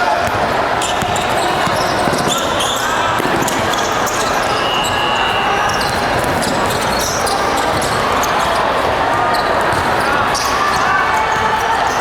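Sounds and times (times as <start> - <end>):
echoing din of voices: 0.0 - 12.0
basketball dribbling on gym floor: 0.2 - 2.6.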